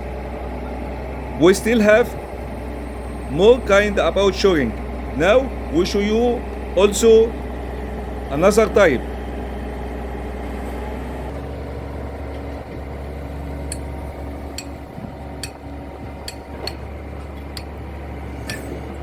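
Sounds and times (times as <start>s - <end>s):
engine running: 0.0s - 19.0s.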